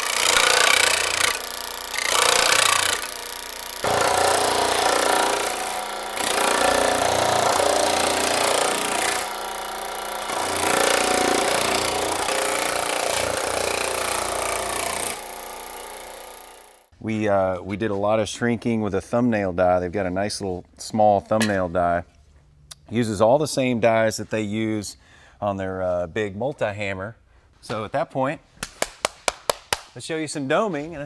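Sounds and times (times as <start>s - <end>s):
power hammer hammering sheet metal: 0.0s - 16.8s.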